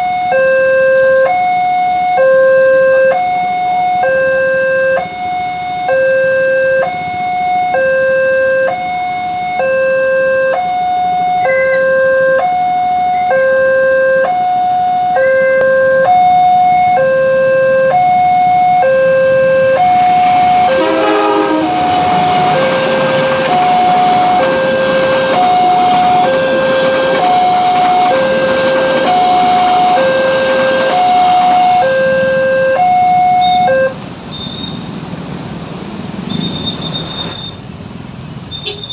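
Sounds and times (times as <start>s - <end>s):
level-crossing alarm two-tone: 0.0s - 34.7s
passing train rumble: 1.0s - 38.9s.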